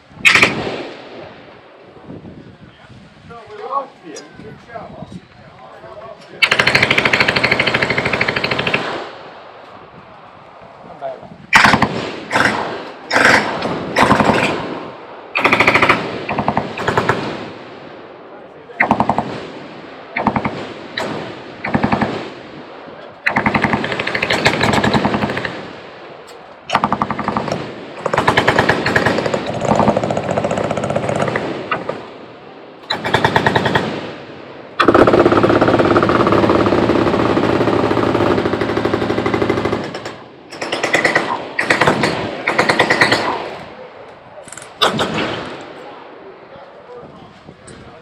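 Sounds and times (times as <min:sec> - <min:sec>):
machine guns firing full-auto: 0:06.4 - 0:09.1, 0:11.6 - 0:17.5, 0:18.8 - 0:19.5, 0:20.2 - 0:22.4, 0:23.3 - 0:25.7, 0:26.7 - 0:32.1, 0:32.9 - 0:34.2, 0:34.8 - 0:43.6, 0:44.8 - 0:45.6.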